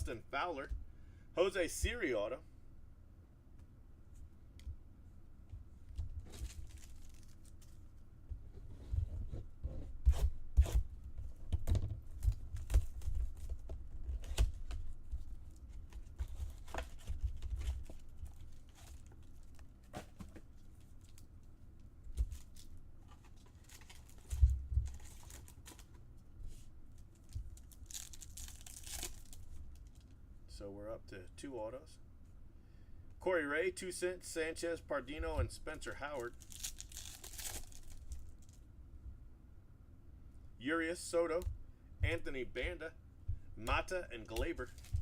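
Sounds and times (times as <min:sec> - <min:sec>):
wrappers tearing and crinkling: 0:06.2 - 0:07.9, 0:22.2 - 0:25.9, 0:27.1 - 0:30.1, 0:36.2 - 0:38.6, 0:44.6 - 0:45.0
cards being handled: 0:11.5 - 0:21.3, 0:43.6 - 0:45.0.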